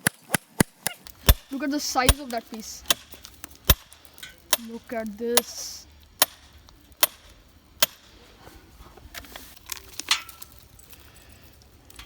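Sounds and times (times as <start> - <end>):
tool striking rock: 0.0 - 4.8, 5.4 - 5.6, 6.2 - 8.1
loose rock pieces clinking: 9.5 - 12.0.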